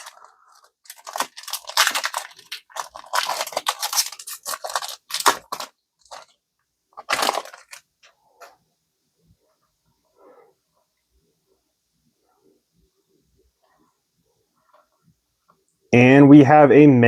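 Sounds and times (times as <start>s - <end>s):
foil wrapper crinkling and tearing: 0.0s - 8.1s.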